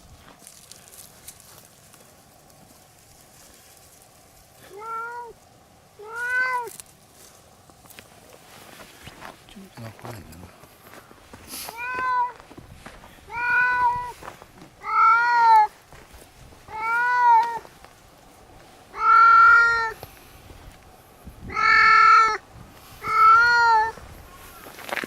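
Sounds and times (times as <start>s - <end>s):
cat meowing: 4.7s - 5.4s, 6.0s - 6.7s, 11.7s - 12.4s, 13.3s - 14.2s, 14.8s - 15.7s, 16.7s - 17.6s, 18.9s - 20.0s, 21.5s - 22.4s, 23.0s - 24.6s.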